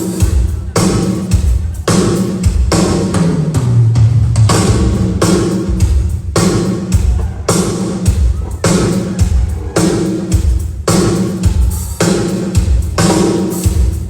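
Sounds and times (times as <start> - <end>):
drum kit playing a groove: 0.0 - 14.0.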